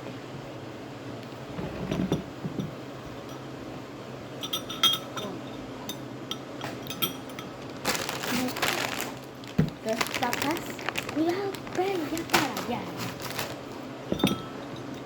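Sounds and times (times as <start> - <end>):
small dishes clinking: 4.4 - 10.2, 12.3 - 15.0.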